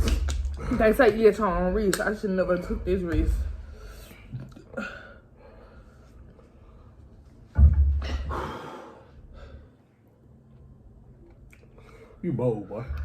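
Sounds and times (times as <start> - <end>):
person exhaling breathily: 8.0 - 9.7.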